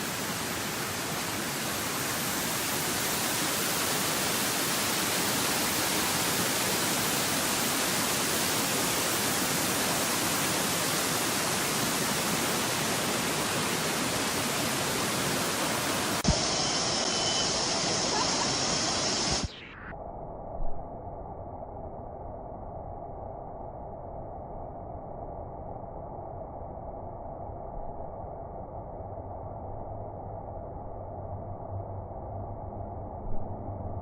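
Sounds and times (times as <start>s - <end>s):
waterfall rushing: 0.0s - 19.5s.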